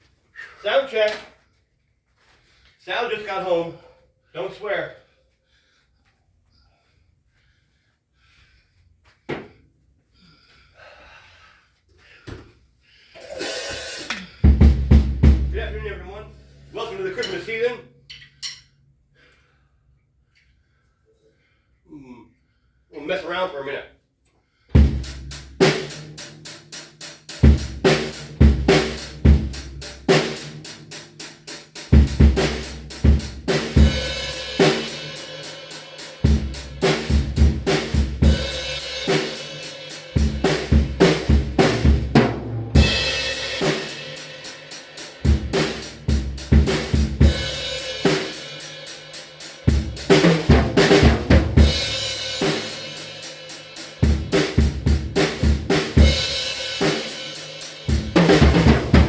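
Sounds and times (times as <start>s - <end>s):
snare and drum hits: 26.8s - 59.0s.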